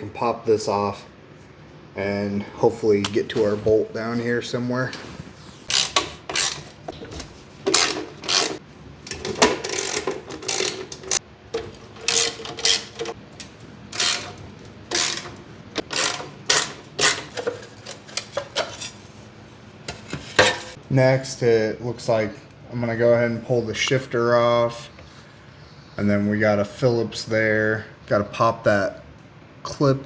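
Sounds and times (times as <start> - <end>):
hand tools on engine fasteners: 5.6 - 19.1.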